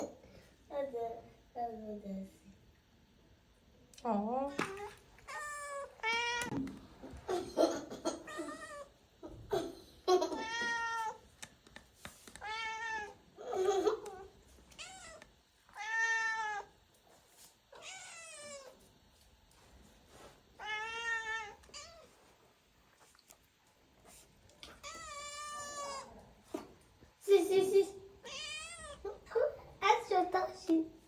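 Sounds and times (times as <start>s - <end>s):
cats meowing: 4.8s - 6.6s, 8.2s - 8.9s, 10.3s - 11.2s, 14.1s - 16.7s, 17.7s - 18.8s, 20.6s - 22.2s, 24.6s - 26.3s, 28.2s - 29.2s.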